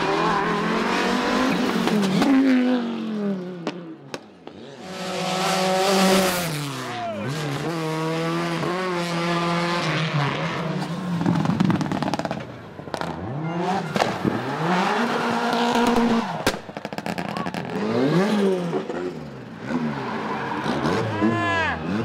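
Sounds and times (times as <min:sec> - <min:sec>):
rally car engine revving: 0:00.0 - 0:22.0
sharp crack: 0:15.8 - 0:17.7.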